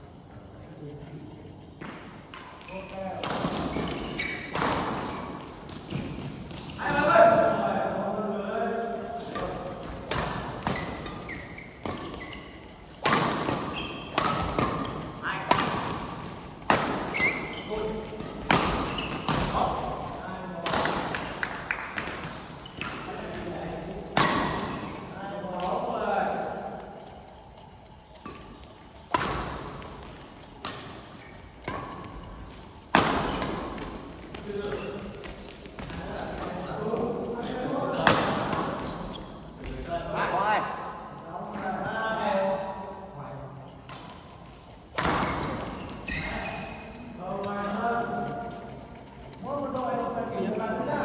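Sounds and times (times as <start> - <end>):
shoes squeaking on court floor: 1.1 - 7.0, 9.0 - 25.8, 26.4 - 39.8, 43.7 - 49.9
racket hitting shuttlecock: 1.8 - 6.7, 9.2 - 25.9, 28.2 - 36.6, 38.0 - 39.2, 43.8 - 44.3, 44.9 - 46.3.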